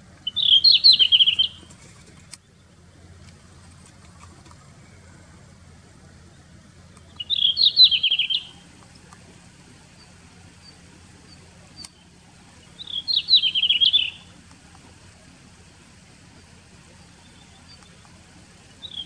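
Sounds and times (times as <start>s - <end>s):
bird singing warbling phrases: 0.0s - 19.0s
faint low hum: 0.0s - 19.0s.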